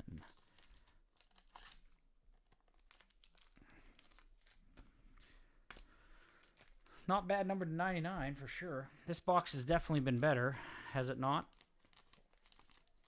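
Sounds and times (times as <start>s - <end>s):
plastic packaging crinkling: 0.0s - 7.7s, 11.0s - 13.0s.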